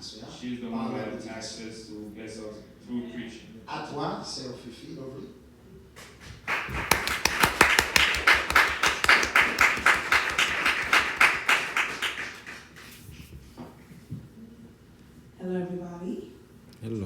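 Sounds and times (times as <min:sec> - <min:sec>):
congregation clapping in time: 0:06.4 - 0:13.1.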